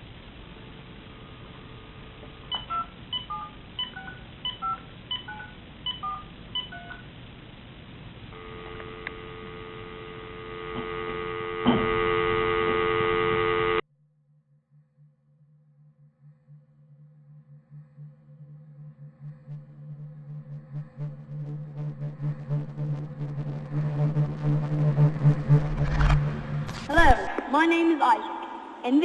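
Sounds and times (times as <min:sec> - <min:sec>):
faint low hum: 0:00.0 - 0:13.8
buzzy telephone tone: 0:00.5 - 0:07.0, 0:08.3 - 0:13.8
touch-tone keypad beeps: 0:02.5 - 0:07.0
dial tone: 0:08.4 - 0:13.8.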